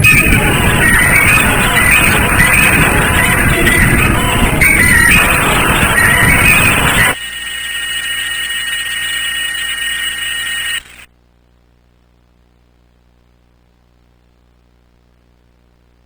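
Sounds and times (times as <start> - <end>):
high-pitched electronic tone: 0.0 - 11.1
loud harsh noise: 0.0 - 11.1.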